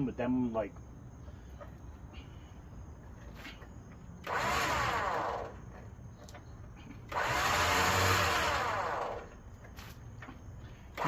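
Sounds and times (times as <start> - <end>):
electric winch motor running: 4.2 - 5.6, 7.1 - 9.4.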